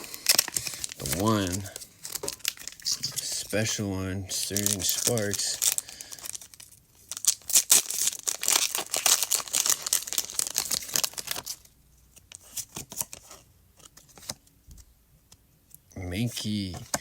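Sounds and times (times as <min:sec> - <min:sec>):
foil wrapper tearing and crinkling: 0:00.0 - 0:13.2
cards rustling: 0:00.0 - 0:14.5.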